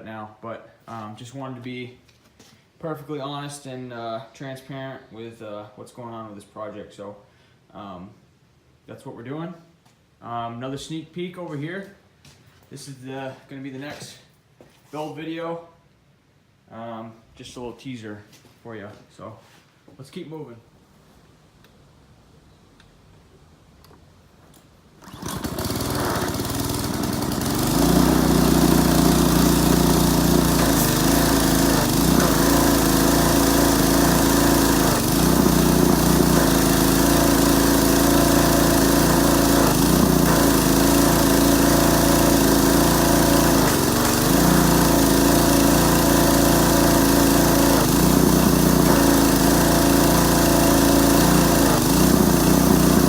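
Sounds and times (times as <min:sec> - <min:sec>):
pressure washer engine running: 0:25.0 - 0:53.0.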